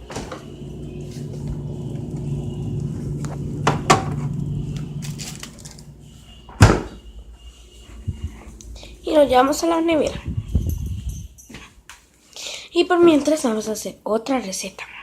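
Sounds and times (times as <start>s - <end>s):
steady low hum: 0.0s - 11.9s.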